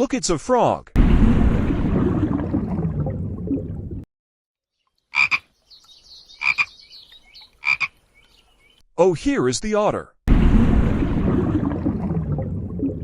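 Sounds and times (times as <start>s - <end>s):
frog croaking: 5.1s - 5.6s, 6.4s - 8.0s.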